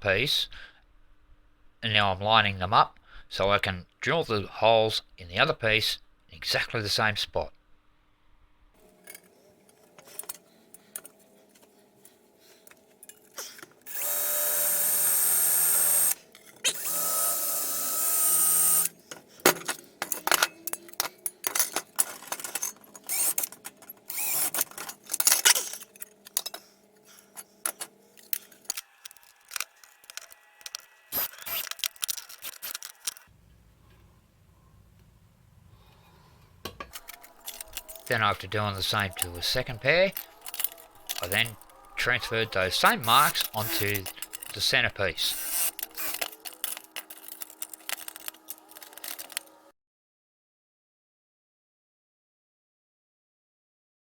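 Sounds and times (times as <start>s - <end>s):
power drill boring through metal: 13.9s - 19.0s, 23.0s - 23.5s, 24.1s - 25.5s, 28.7s - 33.2s, 37.0s - 49.4s
metal pieces clattering: 19.4s - 33.3s, 36.8s - 49.6s.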